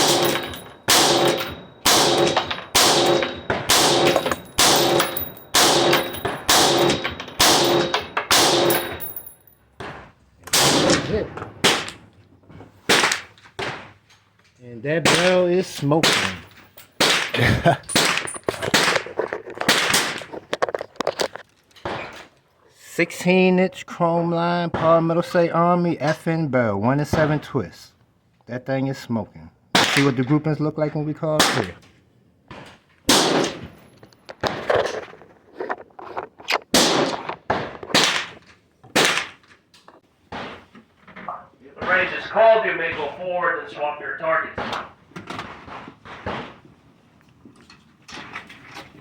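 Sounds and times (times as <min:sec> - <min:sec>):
rifle shots with echo: 0:00.0 - 0:09.1, 0:10.5 - 0:12.0, 0:12.9 - 0:13.3, 0:16.0 - 0:19.0, 0:33.1 - 0:33.6, 0:36.7 - 0:37.2, 0:38.9 - 0:39.4.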